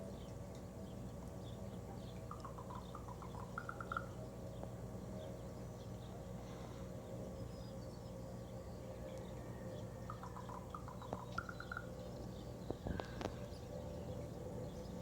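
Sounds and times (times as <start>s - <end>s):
low hum: 0.0s - 15.0s
crow calling: 2.2s - 4.4s, 9.5s - 15.0s.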